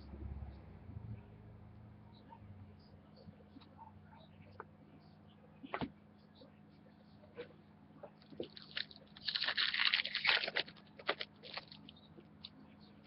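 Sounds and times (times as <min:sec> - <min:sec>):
card pack wrapper crinkling: 0:08.4 - 0:11.9
cards clicking and rustling: 0:08.4 - 0:11.9.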